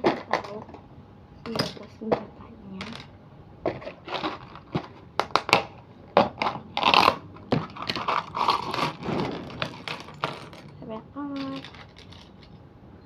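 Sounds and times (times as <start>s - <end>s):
packaging crinkling: 6.8s - 10.8s
plastic toy pieces clicking: 11.4s - 12.5s.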